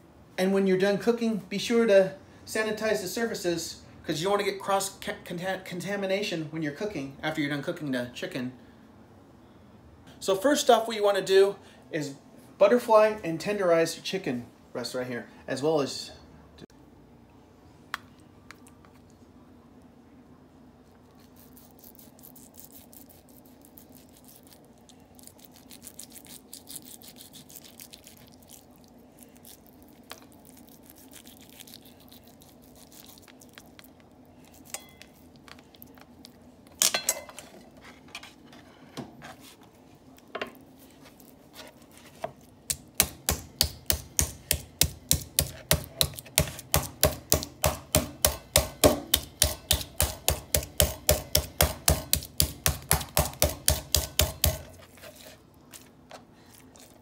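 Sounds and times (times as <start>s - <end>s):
meat mallet pounding: 42.7s - 54.7s.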